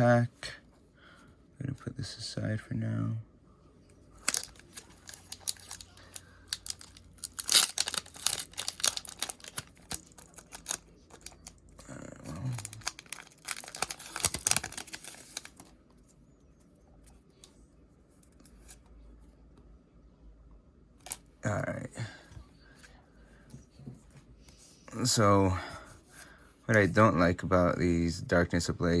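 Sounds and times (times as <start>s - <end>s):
foil wrapper crinkling and tearing: 4.2s - 15.7s.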